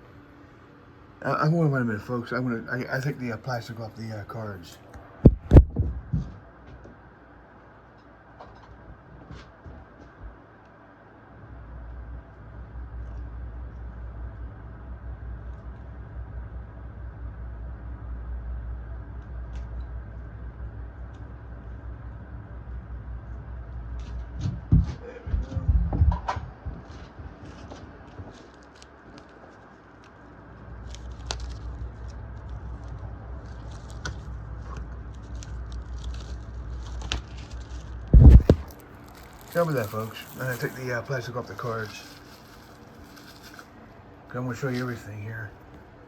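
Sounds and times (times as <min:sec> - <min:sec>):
low rumble: 0:12.8 - 0:27.3, 0:30.5 - 0:40.7
plastic wrapping crinkling: 0:26.9 - 0:43.8
handling noise rumble: 0:30.6 - 0:44.2.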